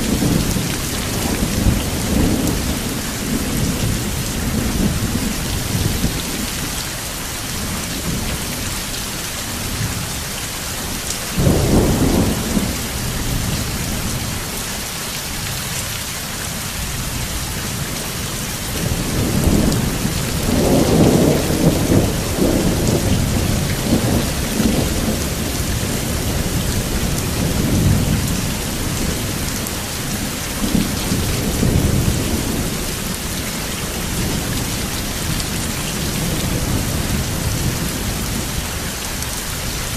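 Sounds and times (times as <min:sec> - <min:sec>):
thunder rumbling: 0:00.0 - 0:06.6, 0:11.4 - 0:14.4, 0:18.8 - 0:39.2
steady rain falling: 0:00.0 - 0:39.9.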